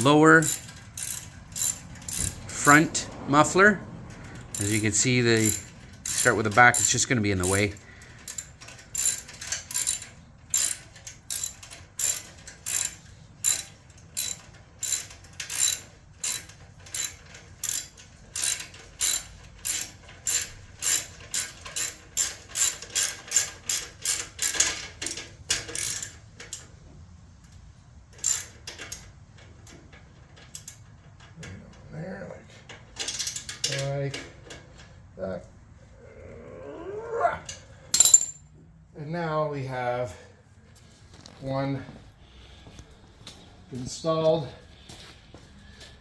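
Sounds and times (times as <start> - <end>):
ratchet wrench clicking: 0.0 - 2.9, 4.3 - 26.7, 28.2 - 29.1, 30.5 - 30.8.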